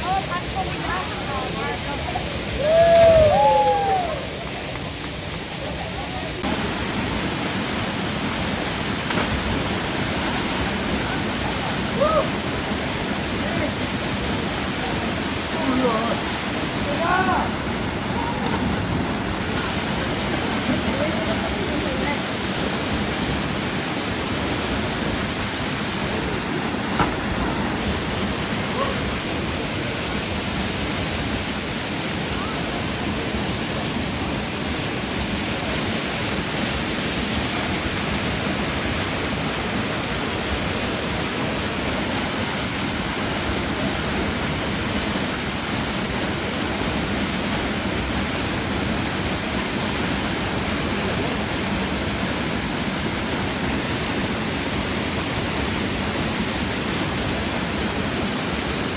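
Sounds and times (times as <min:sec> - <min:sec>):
waterfall rushing: 0:00.0 - 0:58.9
sharp knock or splash: 0:09.1 - 0:09.5, 0:26.9 - 0:27.4.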